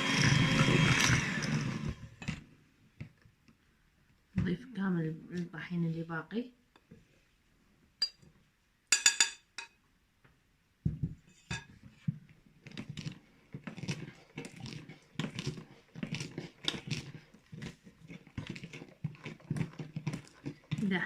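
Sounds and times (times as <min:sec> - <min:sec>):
utensil stirring batter in bowl: 0:11.3 - 0:21.0.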